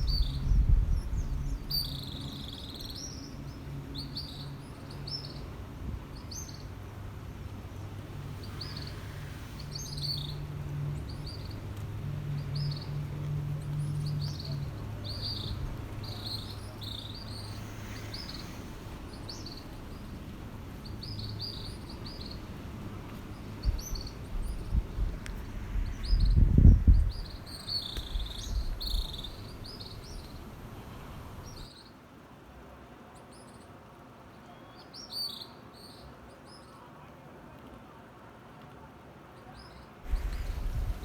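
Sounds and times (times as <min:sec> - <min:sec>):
small birds chirping: 0:00.0 - 0:31.9, 0:39.6 - 0:41.0
low rumble: 0:24.4 - 0:31.6, 0:40.1 - 0:41.0.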